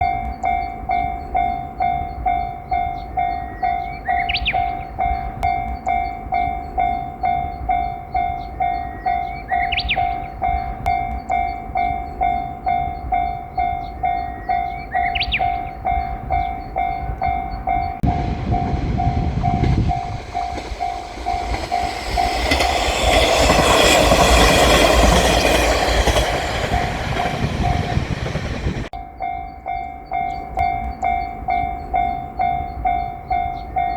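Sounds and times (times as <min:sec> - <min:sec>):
train engine rumble: 0:17.7 - 0:29.0
train wheel clatter: 0:18.1 - 0:29.0.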